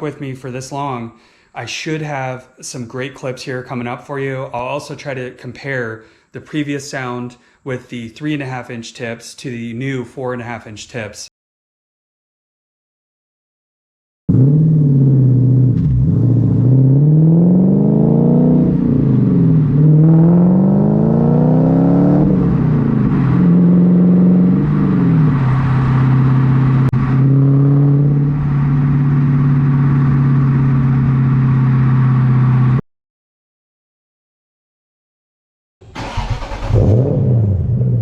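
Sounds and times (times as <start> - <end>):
car engine exhaust revving: 14.3 - 32.8, 36.0 - 38.0.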